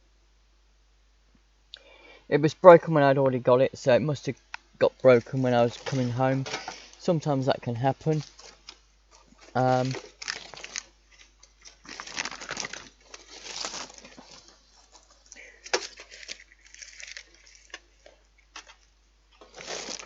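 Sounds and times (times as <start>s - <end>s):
wrapper crinkling and rustling: 5.1s - 7.0s, 8.0s - 20.0s.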